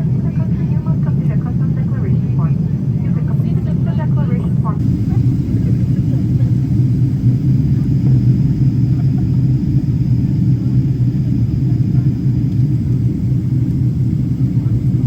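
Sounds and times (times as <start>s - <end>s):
aircraft cabin engine rumble: 0.0s - 15.0s
faint thin whine: 4.8s - 15.0s.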